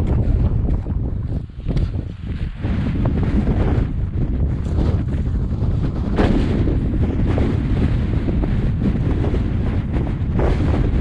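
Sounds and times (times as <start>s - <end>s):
gusts thumping microphone: 0.0s - 11.0s
strong wind on microphone: 0.0s - 11.0s.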